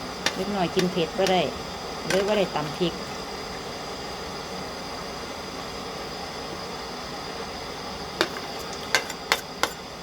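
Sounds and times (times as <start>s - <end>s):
steady hiss: 0.0s - 4.4s
utensils clicking against pot: 0.2s - 2.8s, 8.2s - 9.9s.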